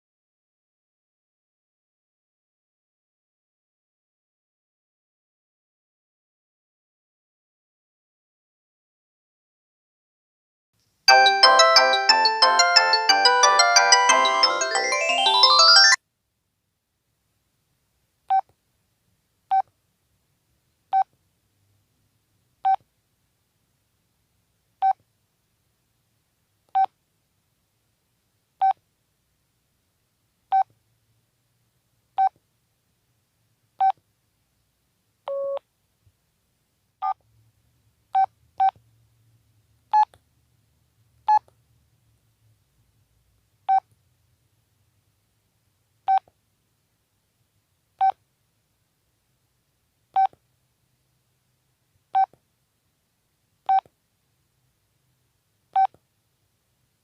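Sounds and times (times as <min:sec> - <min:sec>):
long low phone tone: 0:11.1 - 0:16.0
phone key-press beeps: 0:35.3 - 0:35.6.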